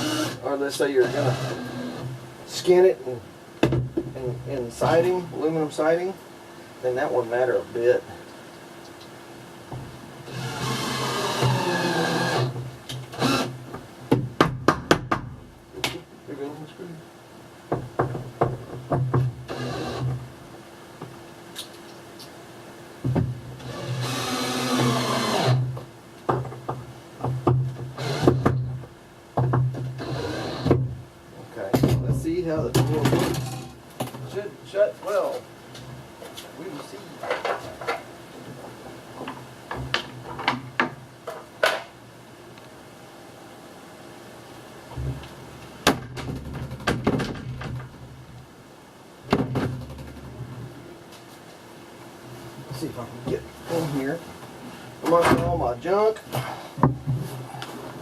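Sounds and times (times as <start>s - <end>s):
drill driving a screw into wood: 0.0s - 0.4s, 1.0s - 2.1s, 10.3s - 13.6s, 19.5s - 20.2s, 23.6s - 25.8s, 28.0s - 28.7s, 30.0s - 30.8s.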